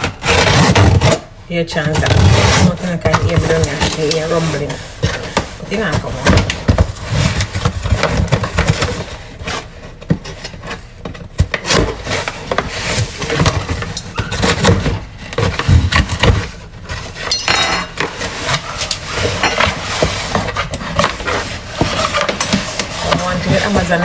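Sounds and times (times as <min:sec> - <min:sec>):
cardboard box being handled: 0:02.0 - 0:17.2.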